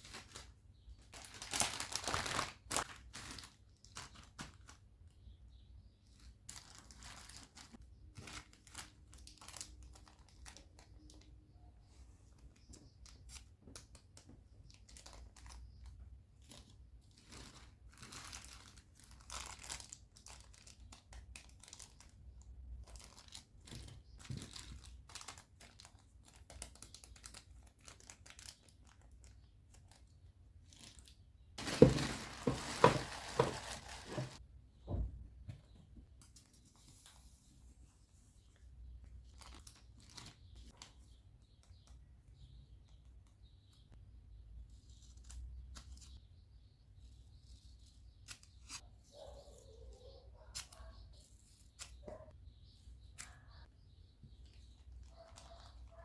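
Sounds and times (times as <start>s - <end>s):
packing materials crinkling: 0.0s - 4.8s, 6.2s - 11.3s, 13.8s - 34.4s, 39.2s - 40.9s.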